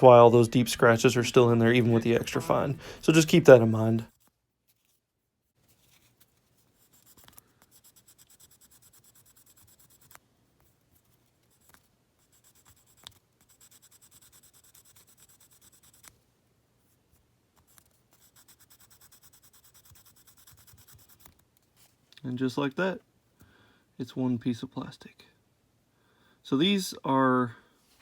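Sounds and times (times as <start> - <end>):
sanding stick scratching plastic: 6.7 - 10.2, 11.5 - 16.1, 17.7 - 21.4.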